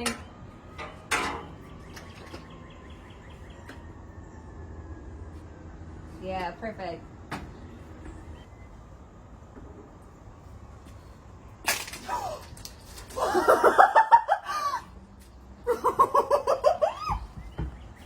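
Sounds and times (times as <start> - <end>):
person laughing hard: 13.2 - 14.9, 15.7 - 17.2.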